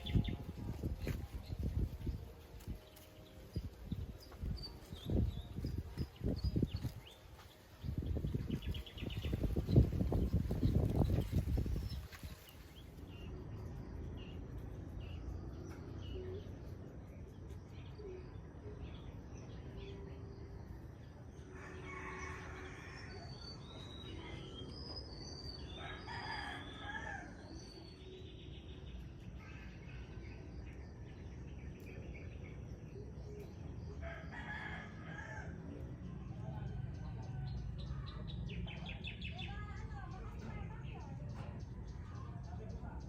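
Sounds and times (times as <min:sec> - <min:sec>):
small birds chirping: 0:00.0 - 0:21.6, 0:22.9 - 0:43.0
rooster crowing: 0:21.5 - 0:23.3, 0:25.8 - 0:27.4.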